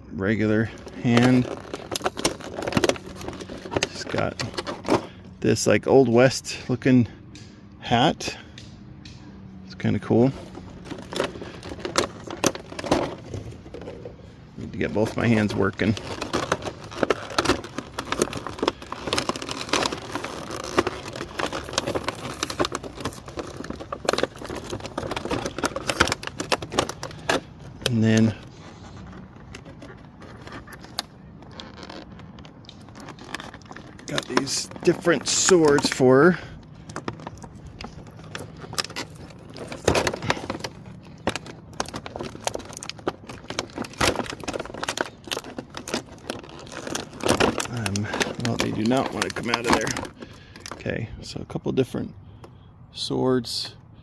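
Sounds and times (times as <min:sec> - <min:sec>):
stiff plastic packaging crinkling: 0:00.3 - 0:06.8, 0:09.7 - 0:50.8.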